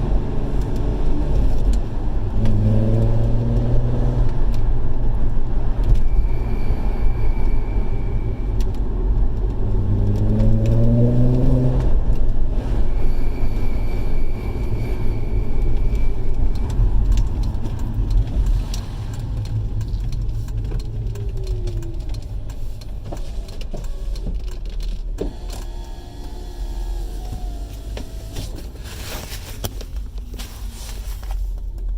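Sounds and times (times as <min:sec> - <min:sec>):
car road and engine noise: 0:00.0 - 0:31.9
high-pitched whine: 0:05.9 - 0:09.2, 0:12.8 - 0:17.9.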